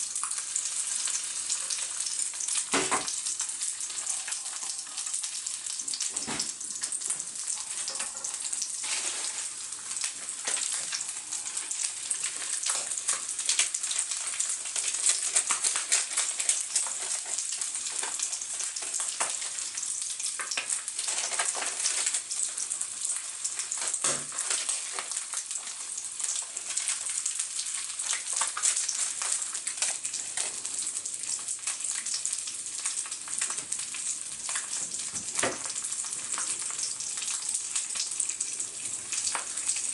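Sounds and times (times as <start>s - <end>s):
food sizzling in a hot pan: 0.0s - 39.9s
knock: 2.8s - 3.1s.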